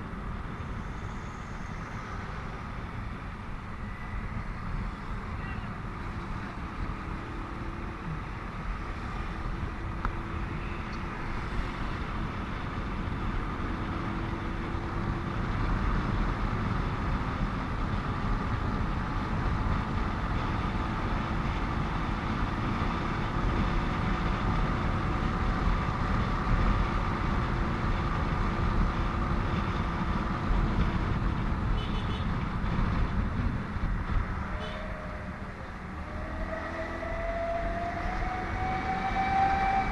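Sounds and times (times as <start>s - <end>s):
road hum: 0.0s - 39.9s
wind rushing over microphone: 8.2s - 39.9s.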